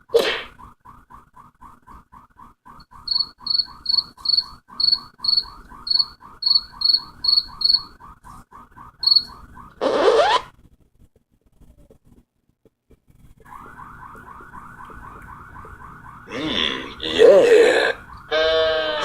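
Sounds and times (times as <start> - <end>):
cricket chirps: 3.1 - 7.9, 9.0 - 9.3
frog croaking quickly: 16.4 - 19.0.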